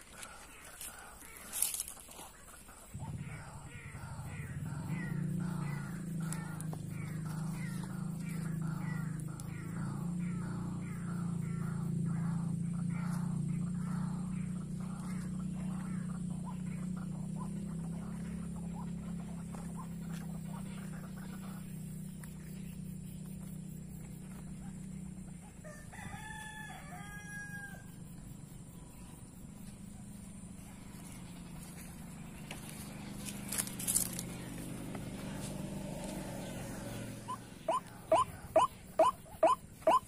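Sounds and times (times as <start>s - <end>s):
low steady hum: 0.0s - 40.0s
fowl crowing: 25.4s - 28.1s, 35.2s - 40.0s
short sharp bird calls: 30.6s - 40.0s.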